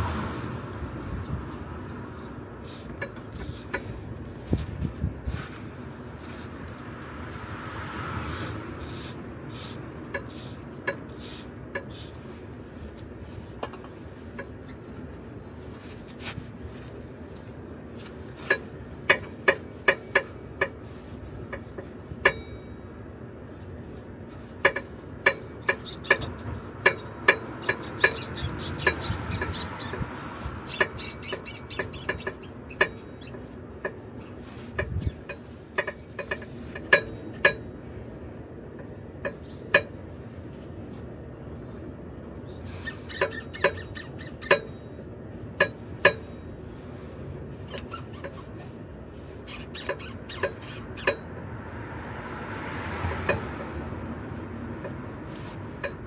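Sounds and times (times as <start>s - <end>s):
sharp clicks and light knocks: 34.7s - 37.6s.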